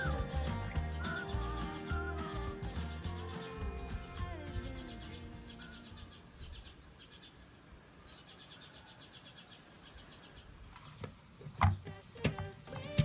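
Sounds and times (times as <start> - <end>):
high rapid chirping trills: 0.0 - 6.6.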